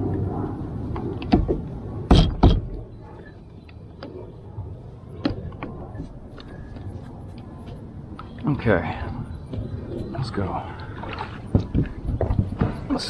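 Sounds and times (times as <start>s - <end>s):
knocks and thumps: 1.2s - 2.8s, 11.5s - 13.0s.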